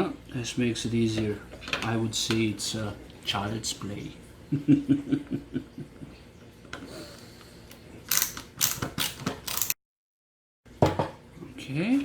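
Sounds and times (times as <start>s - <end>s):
screwdriver clicking and ratcheting: 8.1s - 9.8s.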